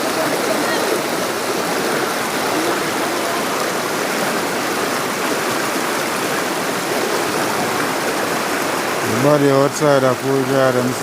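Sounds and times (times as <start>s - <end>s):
waterfall and river rushing: 0.0s - 11.0s.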